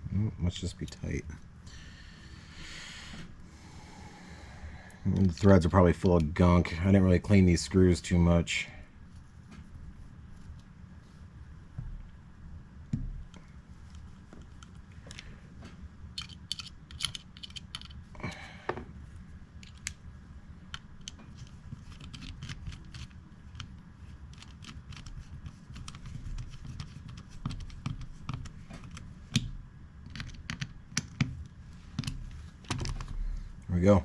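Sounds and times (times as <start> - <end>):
screwdriver clicking on metal screws: 16.2 - 18.0.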